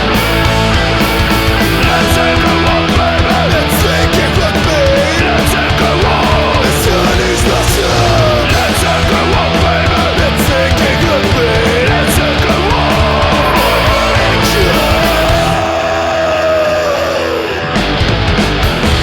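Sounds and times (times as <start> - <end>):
bass guitar: 0.0 - 19.0
distorted electric guitars: 0.0 - 19.0
drums with cymbal crashes: 0.0 - 19.0.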